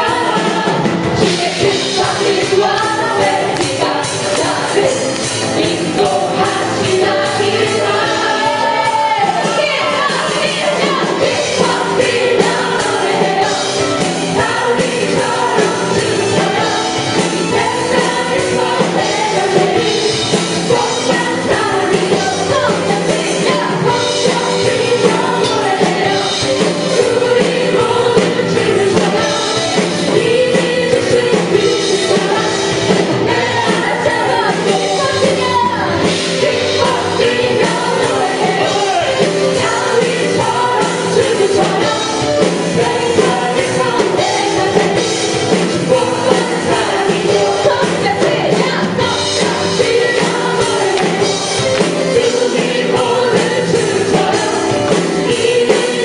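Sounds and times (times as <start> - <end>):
instrumental accompaniment: 0.0 - 56.0
voices singing a melody: 0.0 - 56.0.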